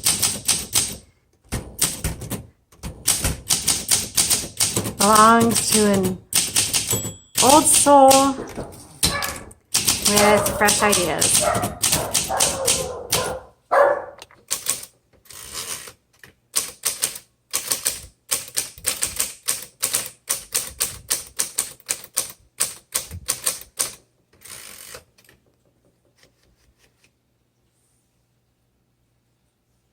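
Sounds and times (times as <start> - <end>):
typewriter keystrokes: 0.0 - 13.4, 14.4 - 16.0, 16.6 - 25.0.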